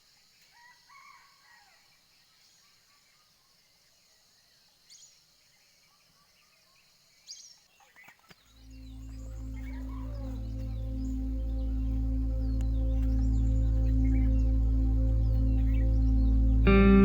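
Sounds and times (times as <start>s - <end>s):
bird calls: 7.3s - 17.0s
high insect drone: 8.6s - 17.0s.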